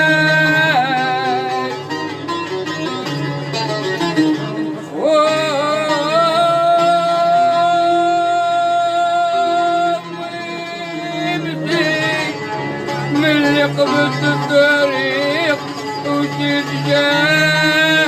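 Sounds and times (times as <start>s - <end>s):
person singing: 0.0s - 1.9s, 4.8s - 12.4s, 13.0s - 18.0s
plucked string accompaniment: 0.0s - 18.0s.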